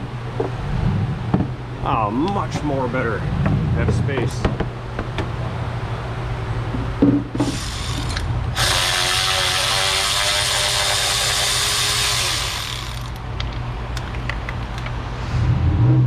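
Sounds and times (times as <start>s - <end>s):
electric ratchet spinning: 7.4s - 13.3s.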